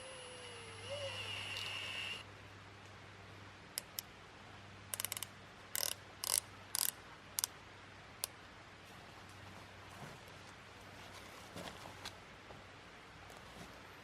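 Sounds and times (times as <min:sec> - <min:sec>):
mechanical clicks and rasps: 0:00.0 - 0:02.2, 0:04.9 - 0:07.5.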